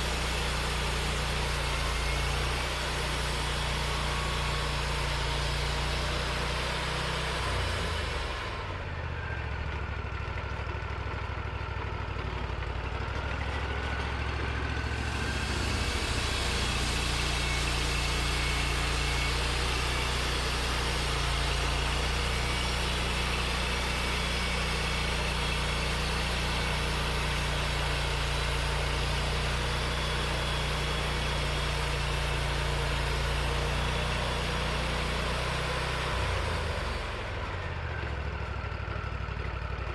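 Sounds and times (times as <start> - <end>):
sawmill engine running: 0.0 - 39.9.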